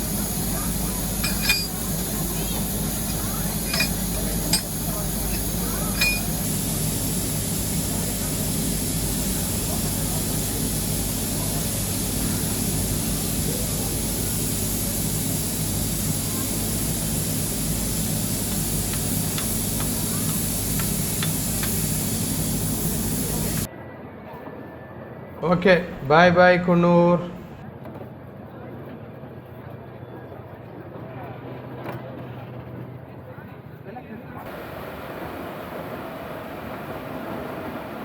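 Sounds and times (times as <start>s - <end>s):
steam locomotive hissing: 0.0s - 23.7s, 25.4s - 27.6s
metallic clinks: 1.0s - 2.4s, 3.0s - 6.5s.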